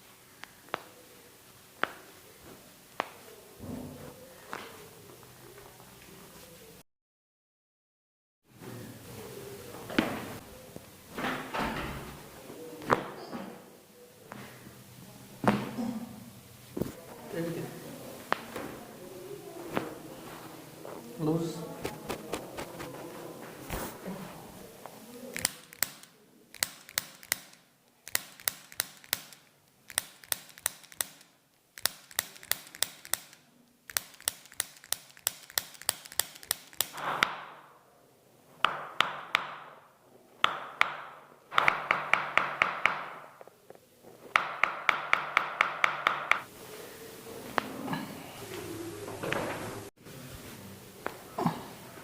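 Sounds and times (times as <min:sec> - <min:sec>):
sharp taps in bursts: 0:25.4 - 0:37.4, 0:44.3 - 0:46.5.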